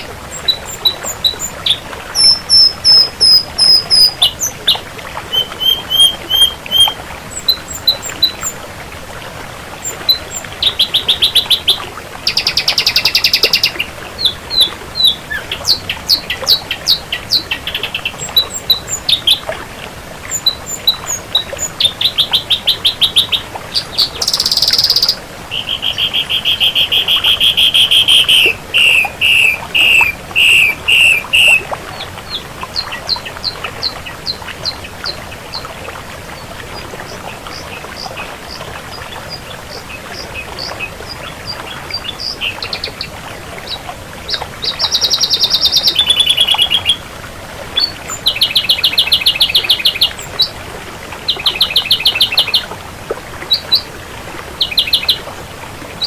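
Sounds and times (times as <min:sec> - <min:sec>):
bird singing whistles and trills: 0:00.0 - 0:08.6, 0:09.8 - 0:19.4, 0:20.3 - 0:34.4, 0:44.7 - 0:47.0, 0:47.8 - 0:50.3, 0:51.4 - 0:52.6.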